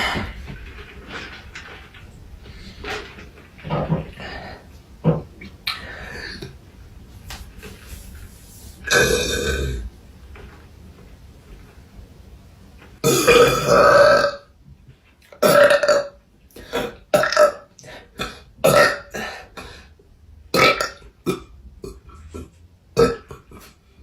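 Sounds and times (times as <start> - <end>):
woman burping: 8.9 - 9.8, 13.0 - 14.4, 15.4 - 16.1, 16.7 - 19.3, 20.6 - 23.7.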